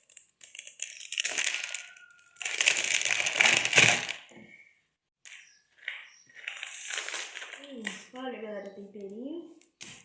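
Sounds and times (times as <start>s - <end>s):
dry noodles crackling in packet: 0.0s - 4.3s, 6.3s - 8.4s.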